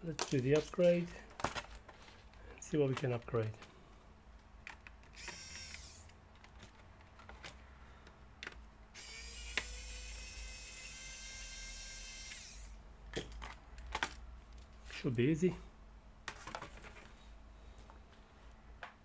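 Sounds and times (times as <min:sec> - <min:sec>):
electric screwdriver whirring: 0:05.1 - 0:06.2, 0:09.0 - 0:12.8.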